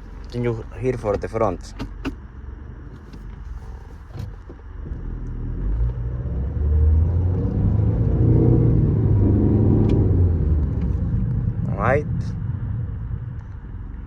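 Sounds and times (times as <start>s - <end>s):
car grinding rumble: 0.0s - 14.0s.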